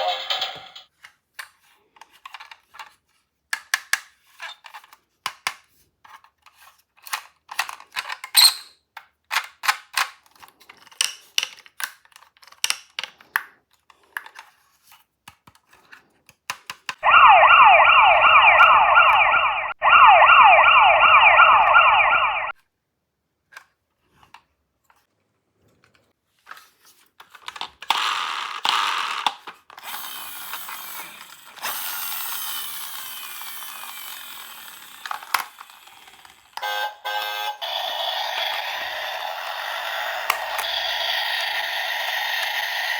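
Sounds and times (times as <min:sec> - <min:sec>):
plastic toy cars clattering: 0:00.0 - 0:17.0, 0:23.4 - 0:36.8
toy ambulance electronic siren: 0:17.0 - 0:22.6, 0:29.9 - 0:42.9.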